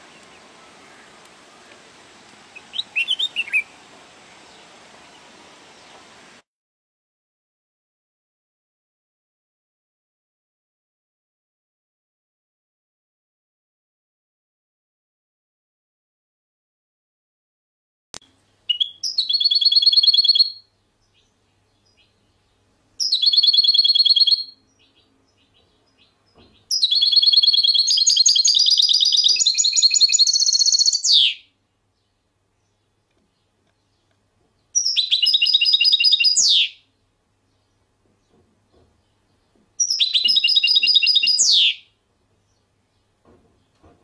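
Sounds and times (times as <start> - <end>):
songbird singing: 0.0 - 6.4, 18.2 - 44.0.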